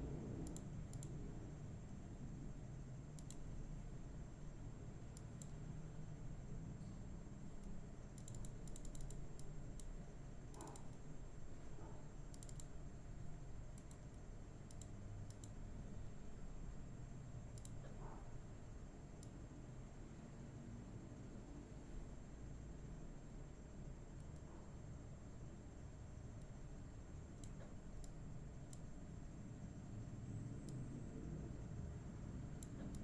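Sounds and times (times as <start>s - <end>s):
low steady hum: 0.0s - 33.0s
computer keys clicking: 0.4s - 1.2s, 3.1s - 3.6s, 5.1s - 5.6s, 7.5s - 11.0s, 12.2s - 12.8s, 13.7s - 15.6s, 17.5s - 18.0s, 27.3s - 28.9s, 32.5s - 33.0s.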